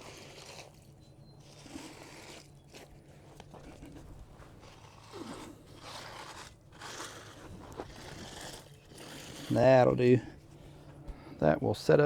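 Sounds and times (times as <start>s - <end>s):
tool scraping wet concrete: 0.0s - 10.4s.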